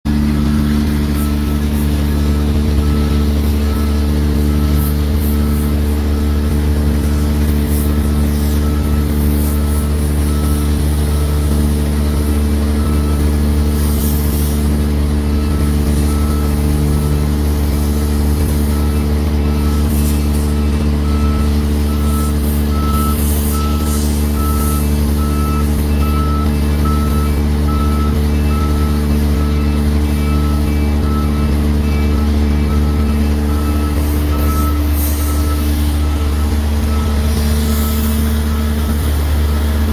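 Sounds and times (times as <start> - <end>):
excavator diesel engine running: 0.0 - 39.9
warning alarm beeping: 14.6 - 39.6.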